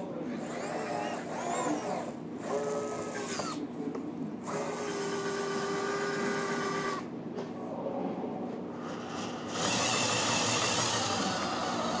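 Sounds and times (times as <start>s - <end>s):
small electric motors whining: 0.3s - 3.6s, 4.4s - 7.1s, 8.8s - 12.0s.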